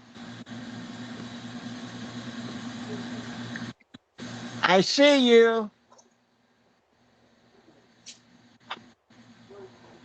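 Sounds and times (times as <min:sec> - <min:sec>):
low even hum: 0:00.0 - 0:10.0
steady hiss: 0:00.0 - 0:10.0.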